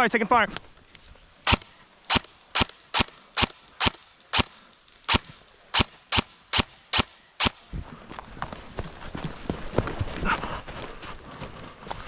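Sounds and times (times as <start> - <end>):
airsoft gun firing shots: 1.4 - 7.7.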